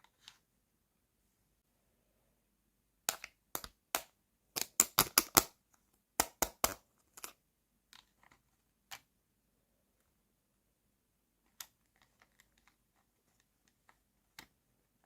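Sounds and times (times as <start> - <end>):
plastic toy pieces clicking: 3.1 - 5.5.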